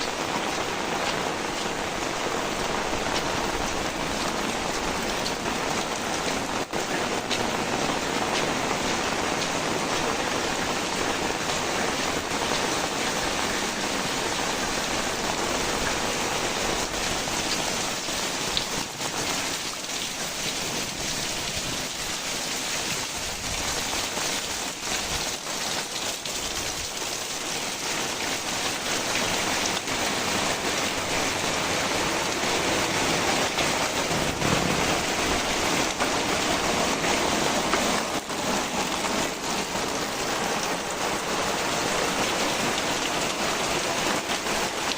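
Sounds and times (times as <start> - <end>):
heavy rain falling: 0.0 - 44.9.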